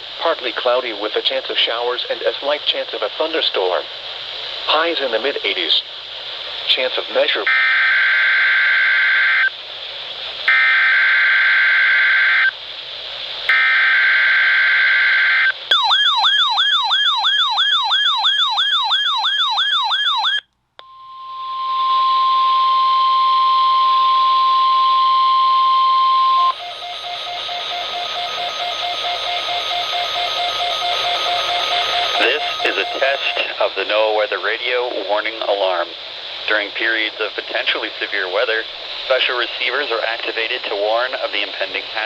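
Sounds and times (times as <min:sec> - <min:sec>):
radio hiss: 0:00.0 - 0:07.5, 0:26.4 - 0:42.0
steady alarm tone: 0:15.7 - 0:23.2, 0:25.4 - 0:33.6
buzzy digital data bursts: 0:26.4 - 0:33.5
warbling alert tone: 0:26.4 - 0:33.5
faint pulsing tones: 0:26.4 - 0:33.6.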